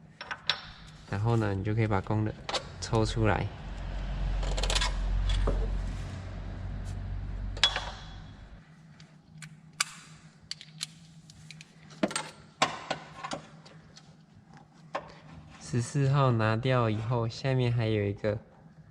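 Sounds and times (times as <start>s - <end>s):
low hum: 0.0s - 10.4s.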